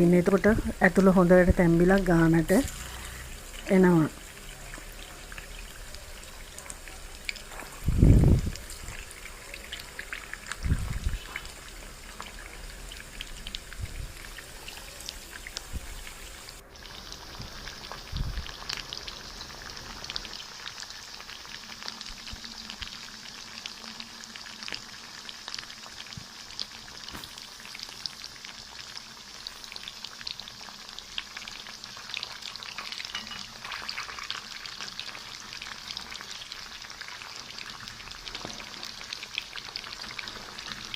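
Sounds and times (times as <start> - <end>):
chicken sizzling in oil: 0.0 - 40.9
dull low thumps: 7.9 - 8.6, 18.1 - 18.4.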